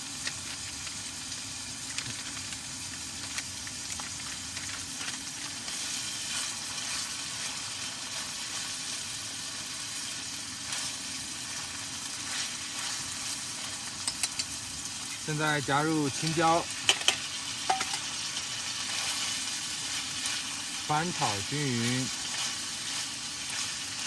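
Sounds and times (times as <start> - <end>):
meat sizzling in a pan: 0.0 - 24.0
spatula clicking against pan: 14.0 - 14.6.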